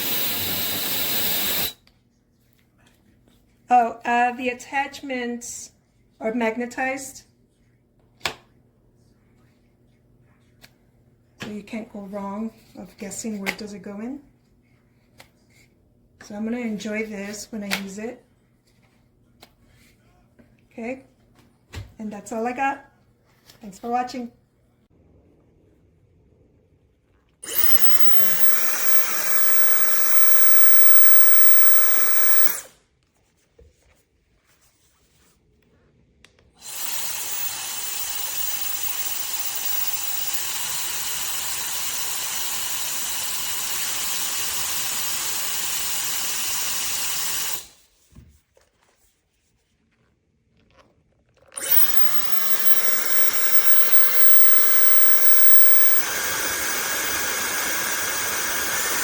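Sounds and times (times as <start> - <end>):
hair dryer blowing air: 0.0 - 1.8, 27.4 - 32.7, 36.6 - 47.7, 51.6 - 59.0.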